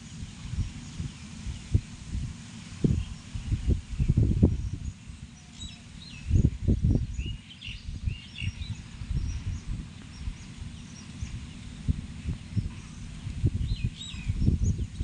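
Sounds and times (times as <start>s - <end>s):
small birds chirping: 0.0s - 1.9s, 2.5s - 15.0s
wind buffeting microphone: 0.0s - 15.0s.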